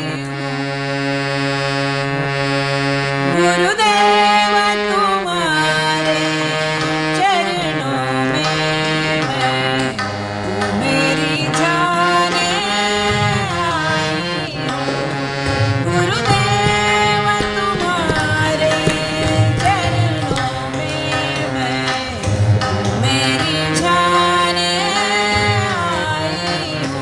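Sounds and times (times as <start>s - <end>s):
woman singing devotional song: 0.0s - 2.1s, 3.1s - 27.0s
sustained backing tones: 0.0s - 27.0s
tabla drum strokes: 10.6s - 27.0s.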